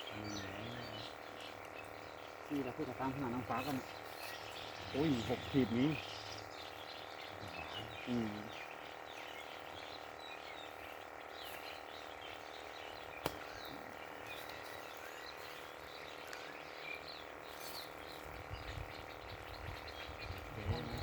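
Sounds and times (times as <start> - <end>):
small chirping calls: 0.0 - 21.0
sharp click: 13.2 - 13.6.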